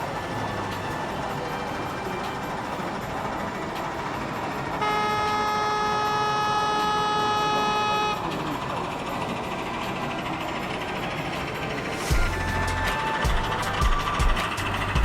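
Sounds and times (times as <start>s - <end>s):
steady horn note: 4.8s - 8.2s.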